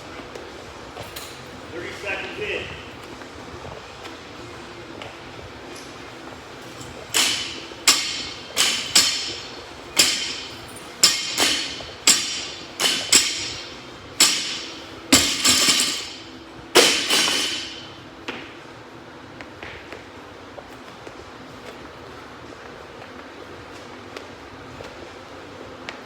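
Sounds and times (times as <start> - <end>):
barbell clanking down: 6.8 - 17.9.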